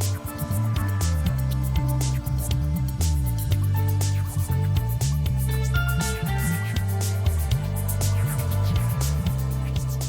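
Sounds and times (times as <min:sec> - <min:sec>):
background music with beat: 0:00.0 - 0:10.0.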